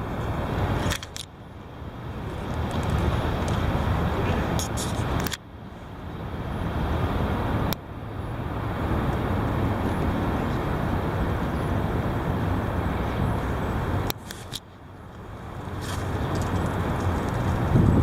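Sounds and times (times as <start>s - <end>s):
wind buffeting microphone: 15.1s - 18.0s.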